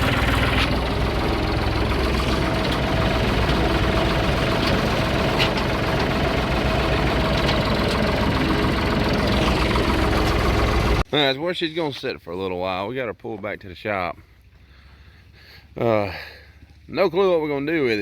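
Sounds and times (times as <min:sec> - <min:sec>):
vehicle engine running: 0:00.0 - 0:11.1.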